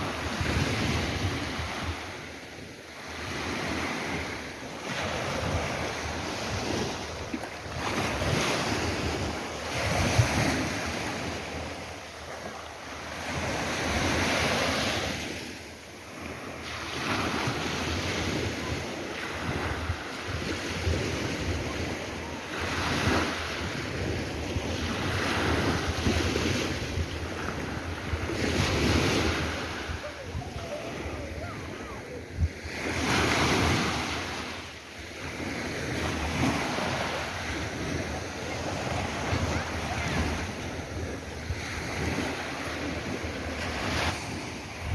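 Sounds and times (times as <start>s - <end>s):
sea waves breaking on shore: 0.0s - 44.9s
wind buffeting microphone: 22.7s - 34.3s.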